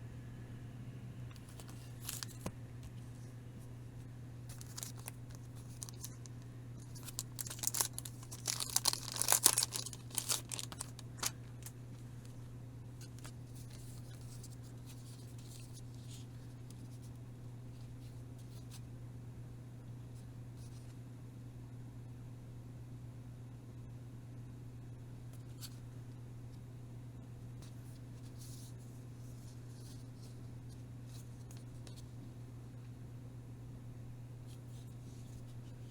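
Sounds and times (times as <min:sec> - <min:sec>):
steady low hum: 0:00.0 - 0:35.9
packaging tearing and crinkling: 0:01.4 - 0:02.5, 0:04.5 - 0:11.7.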